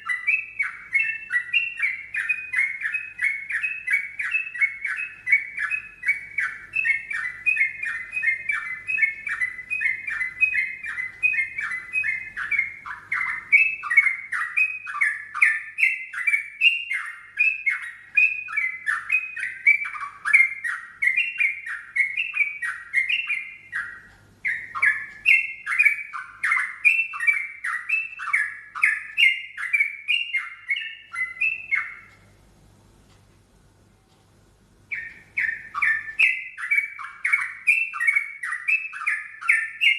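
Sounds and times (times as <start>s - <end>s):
bulbul singing rapid notes: 34.8s - 39.9s.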